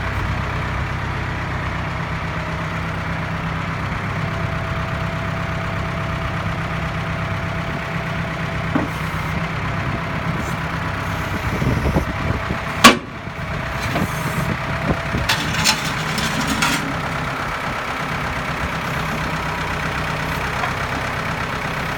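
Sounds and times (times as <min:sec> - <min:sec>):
tractor engine running: 0:00.0 - 0:21.9
metallic knocks and clanks: 0:15.2 - 0:17.1.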